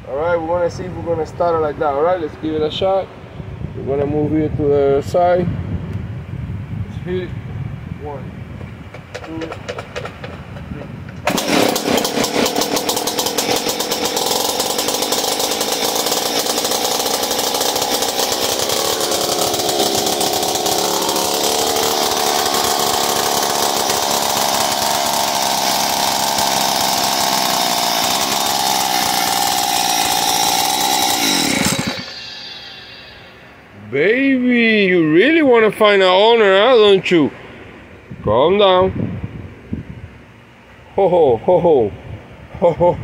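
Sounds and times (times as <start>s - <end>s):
cut-off saw engine running: 11.2s - 33.8s.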